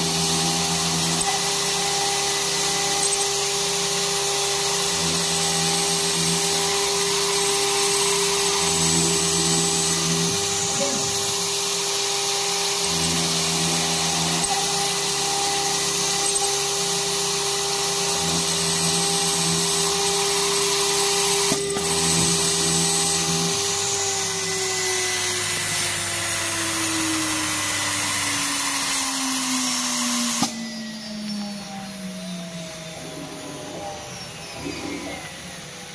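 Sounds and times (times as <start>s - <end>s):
router spindle whine: 0.0s - 35.9s
motor hums: 30.5s - 35.9s.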